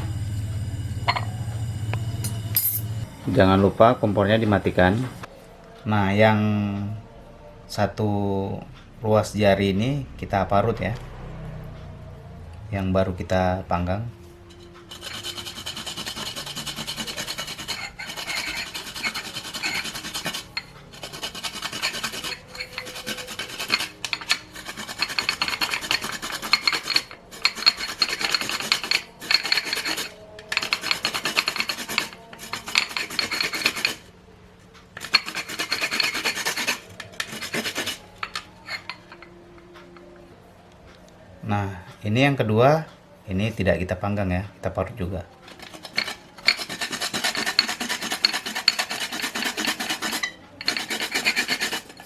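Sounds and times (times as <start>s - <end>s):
root scraping on hand grater: 14.5s - 34.1s, 35.0s - 39.2s, 45.5s - 52.0s.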